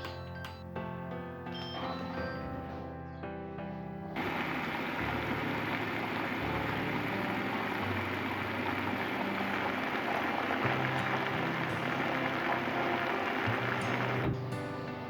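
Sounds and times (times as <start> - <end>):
quiet background music: 0.0 - 15.0
water rushing in washing machine: 4.2 - 15.0.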